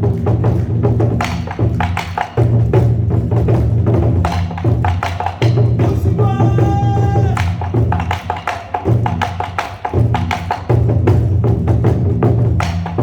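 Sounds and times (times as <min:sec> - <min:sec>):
drums beaten in fast rhythm: 0:00.0 - 0:13.0
steady low backing: 0:00.0 - 0:13.0.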